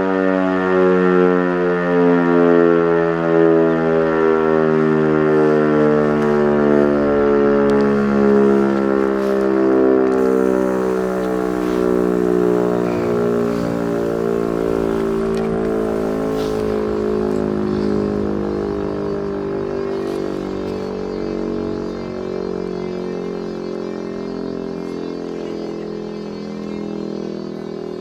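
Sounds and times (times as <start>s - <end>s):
rotary siren winding down: 0.0s - 28.0s.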